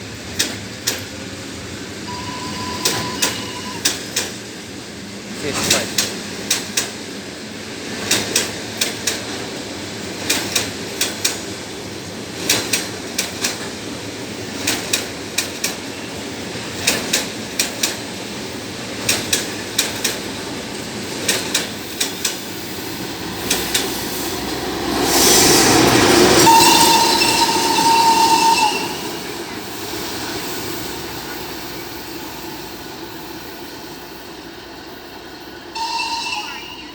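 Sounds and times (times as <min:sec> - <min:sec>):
train wheels clickety-clack: 0:00.0 - 0:01.9, 0:02.7 - 0:36.0
locomotive high whistle: 0:02.1 - 0:03.9, 0:26.4 - 0:29.3, 0:35.8 - 0:36.9.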